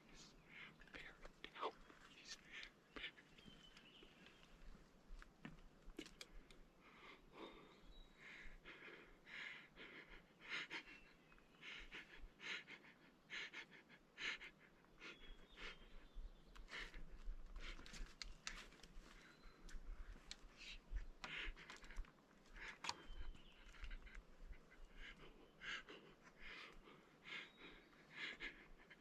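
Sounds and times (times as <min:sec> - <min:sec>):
quick breathing: 0:06.1 - 0:29.0.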